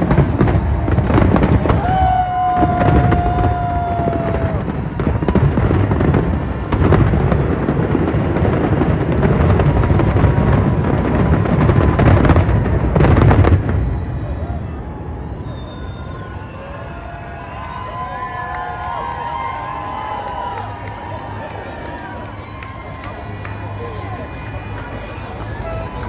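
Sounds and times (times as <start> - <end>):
fireworks booms and cracks: 0.0 - 14.4
whistle-like tone: 15.4 - 16.8.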